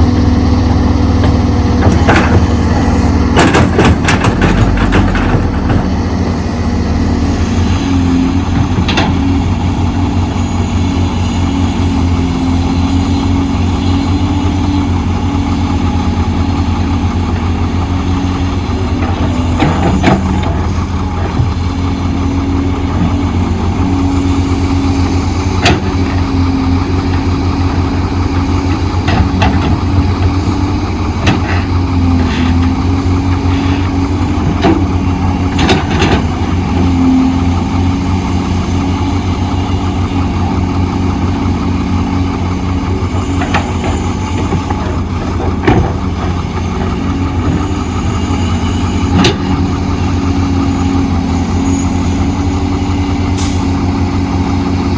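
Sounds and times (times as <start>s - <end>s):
diesel machinery throbbing: 0.0s - 54.9s
metal clanks and knocks: 1.2s - 6.0s, 27.0s - 33.5s, 34.2s - 37.0s, 43.3s - 47.6s.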